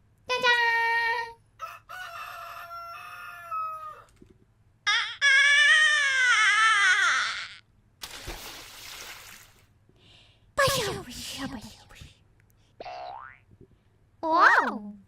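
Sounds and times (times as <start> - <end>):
person imitating rooster crow: 1.6 - 4.1.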